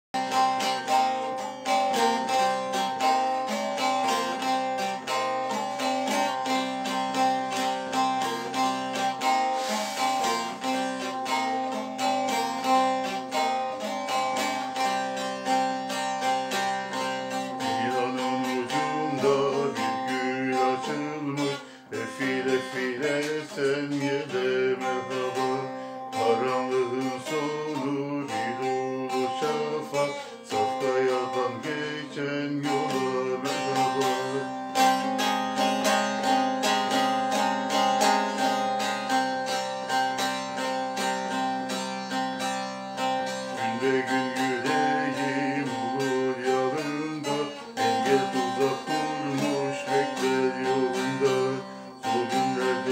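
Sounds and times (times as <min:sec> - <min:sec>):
plucked string instrument strumming: 0:00.1 - 0:52.9
held drone note: 0:01.3 - 0:39.1.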